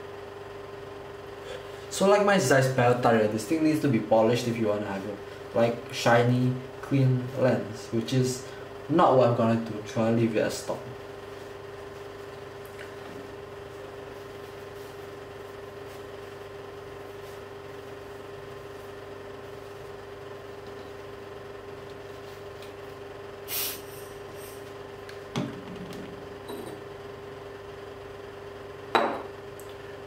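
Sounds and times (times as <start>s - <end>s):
electrical hum: 0.0s - 30.0s
short hiss: 23.5s - 24.6s.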